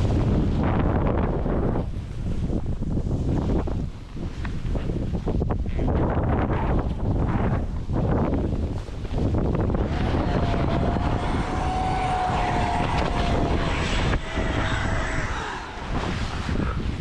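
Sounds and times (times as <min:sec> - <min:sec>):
steady noisy rumble: 0:09.5 - 0:17.0
airplane engines whining: 0:09.9 - 0:16.8.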